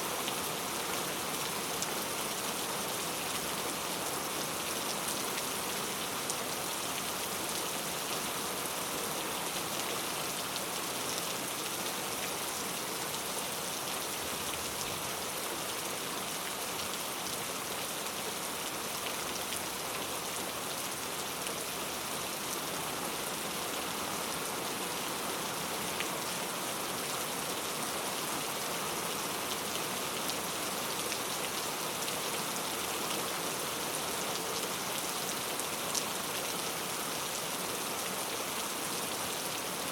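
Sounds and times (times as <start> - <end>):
steady rain hiss: 0.0 - 39.9.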